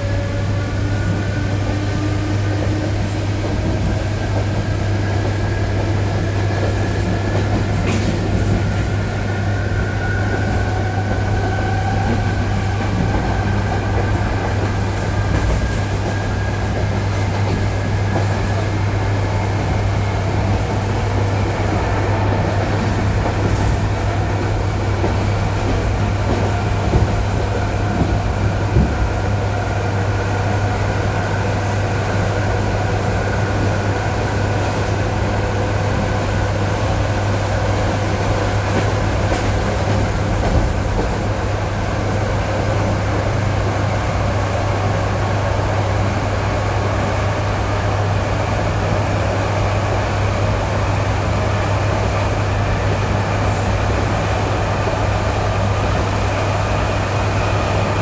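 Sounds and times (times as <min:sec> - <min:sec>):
train hum and rumble: 0:00.0 - 0:58.0
train wheel knocks: 0:11.6 - 0:29.5, 0:38.3 - 0:41.4.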